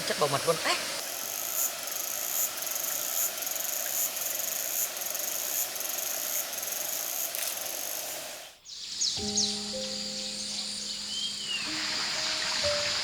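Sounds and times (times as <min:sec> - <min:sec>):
steady background hiss: 0:00.0 - 0:13.0
high-pitched insect trilling: 0:01.0 - 0:08.2.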